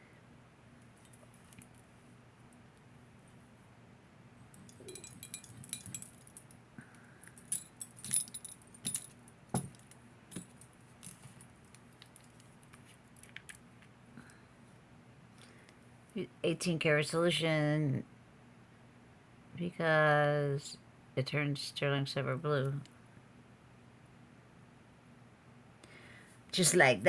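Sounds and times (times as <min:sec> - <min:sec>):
small metal jewelry clinking: 0:04.5 - 0:06.6, 0:07.2 - 0:13.6.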